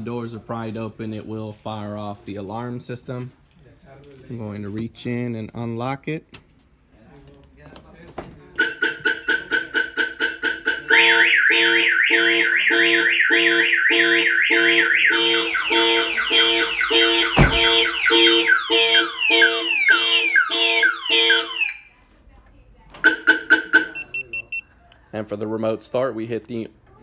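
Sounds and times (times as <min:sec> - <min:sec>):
car horn honking: 0:08.6 - 0:21.8, 0:23.0 - 0:24.1
car alarm siren: 0:08.6 - 0:21.9, 0:23.0 - 0:24.6.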